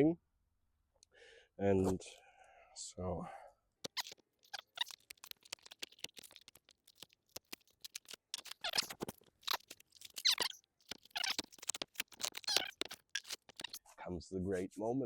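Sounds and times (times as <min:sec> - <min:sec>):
paper crinkling and rustling: 0:03.9 - 0:13.8.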